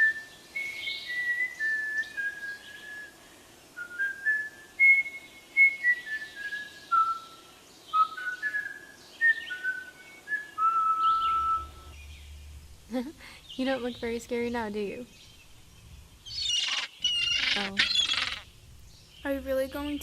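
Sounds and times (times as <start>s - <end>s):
person whistling a melody: 3.8s - 7.4s, 8.0s - 12.0s.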